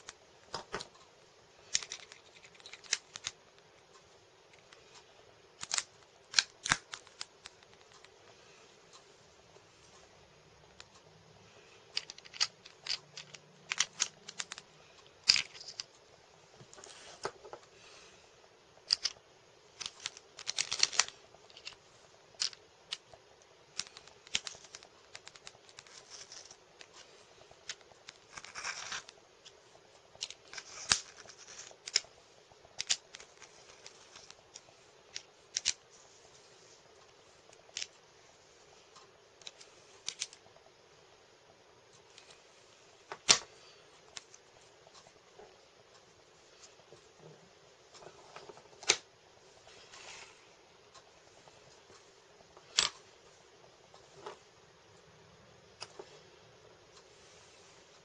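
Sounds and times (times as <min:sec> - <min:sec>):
small tools clicking and tapping: 0:01.7 - 0:03.7, 0:11.9 - 0:15.9, 0:18.9 - 0:19.2.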